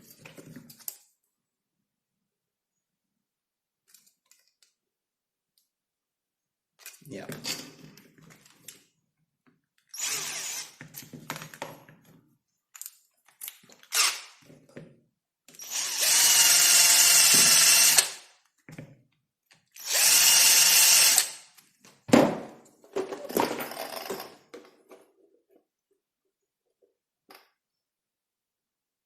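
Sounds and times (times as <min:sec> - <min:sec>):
electric drill drilling: 0:10.0 - 0:10.8, 0:13.9 - 0:14.4, 0:15.6 - 0:18.2, 0:19.8 - 0:21.4.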